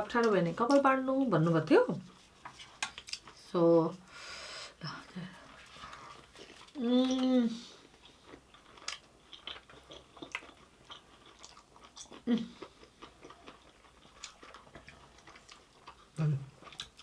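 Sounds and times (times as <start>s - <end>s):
close chewing and mouth sounds: 0.0s - 3.8s, 5.4s - 17.0s.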